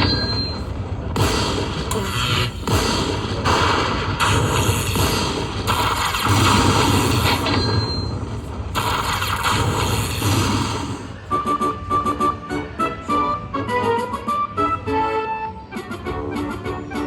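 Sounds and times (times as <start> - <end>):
electronic beeps and chimes: 0.0 - 0.7, 4.2 - 10.3
slot machine music: 11.2 - 17.0.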